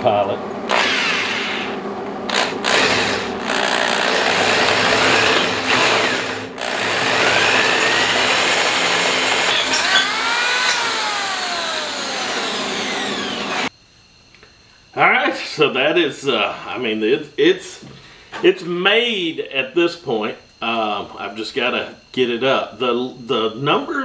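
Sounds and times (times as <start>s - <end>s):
electric drill running: 0.6s - 13.7s
squealing tones: 0.7s - 13.7s.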